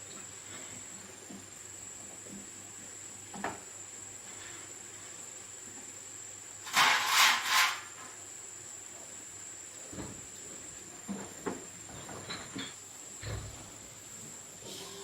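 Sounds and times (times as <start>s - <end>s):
faint high whine: 12.3s - 15.0s.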